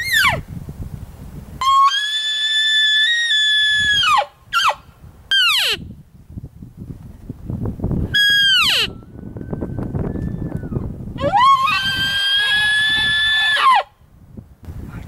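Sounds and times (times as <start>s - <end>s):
elk bugling: 8.1s - 13.9s.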